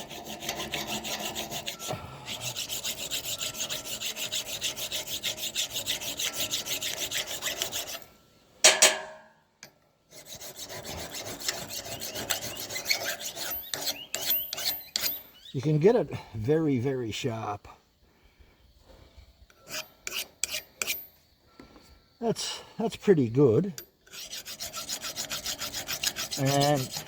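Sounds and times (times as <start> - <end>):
file rasping on steel axe edge: 0.0 - 8.1, 10.1 - 15.3, 19.5 - 21.2, 24.0 - 27.0.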